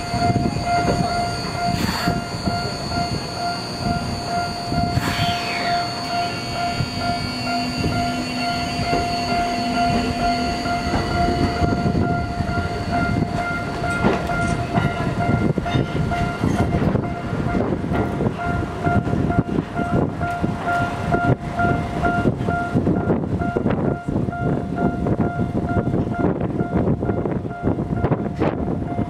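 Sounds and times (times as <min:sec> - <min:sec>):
level-crossing alarm bell: 0:00.0 - 0:29.0
subway train rumbling: 0:00.0 - 0:29.0
wheels clacking over rail joints: 0:08.6 - 0:21.3.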